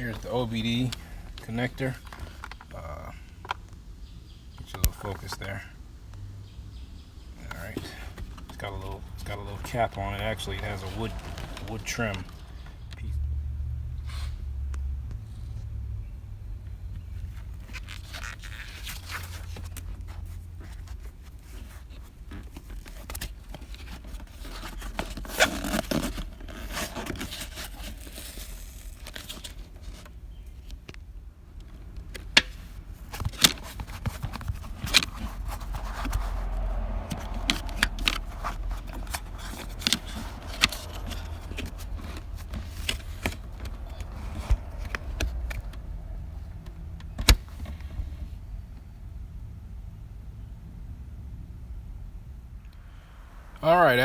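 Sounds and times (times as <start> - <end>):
trim scraping: 8.6 - 12.4, 32.4 - 45.7.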